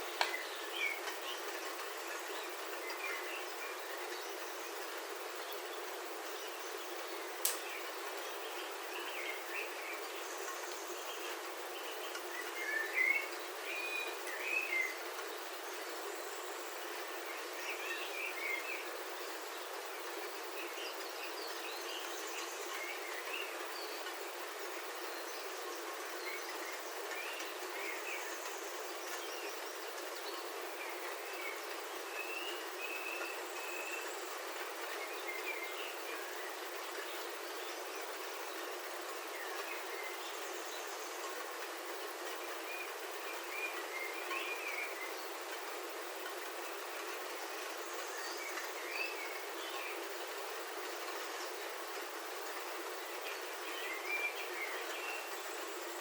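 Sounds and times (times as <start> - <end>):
birds chirping: 0.0 - 56.0
rain on a roof: 0.0 - 56.0
sharp tick: 7.4 - 7.7.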